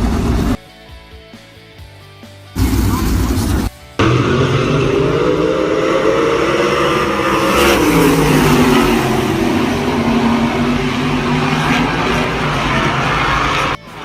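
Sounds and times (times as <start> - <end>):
race car engine passing: 2.6 - 13.8.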